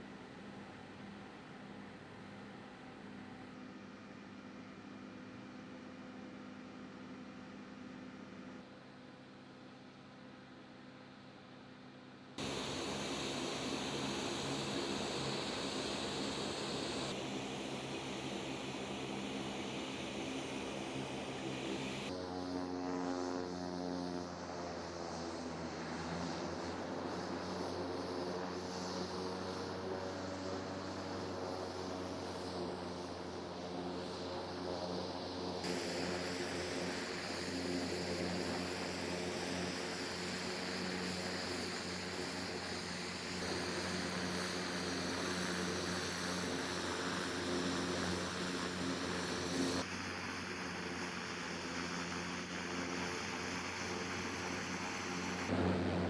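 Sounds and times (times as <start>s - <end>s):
propeller engine droning: 12.4s - 56.0s.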